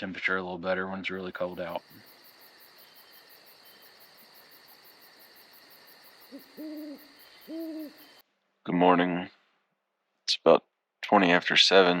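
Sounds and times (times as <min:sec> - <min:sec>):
faint steady hiss: 0:00.0 - 0:09.6
owl hooting: 0:01.2 - 0:08.2.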